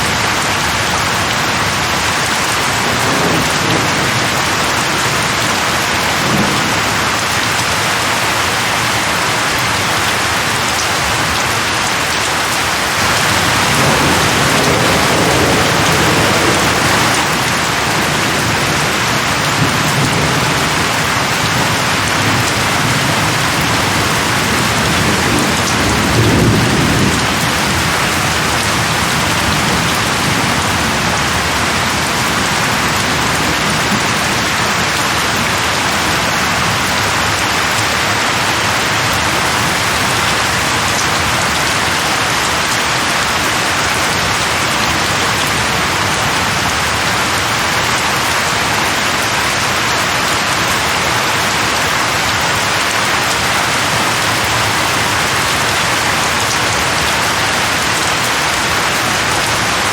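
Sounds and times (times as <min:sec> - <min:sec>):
heavy rain falling: 0:00.0 - 0:59.9
low rolls of thunder: 0:13.0 - 0:35.0.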